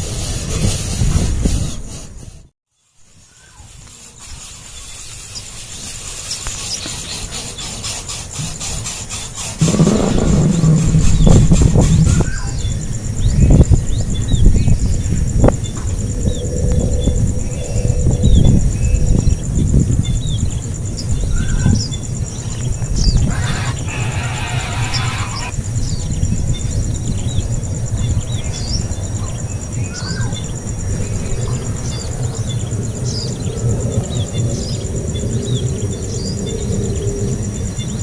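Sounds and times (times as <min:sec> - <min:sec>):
burst of hiss: 0:00.0 - 0:02.5, 0:03.1 - 0:12.8, 0:23.2 - 0:25.5
pulsing high whine: 0:09.6 - 0:13.3
low rumble: 0:09.6 - 0:15.4.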